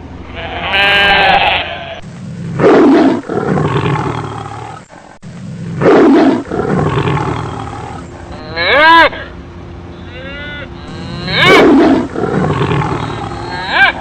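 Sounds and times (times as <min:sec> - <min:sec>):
lion roaring: 0:02.5 - 0:04.9, 0:05.7 - 0:08.9, 0:10.9 - 0:14.0.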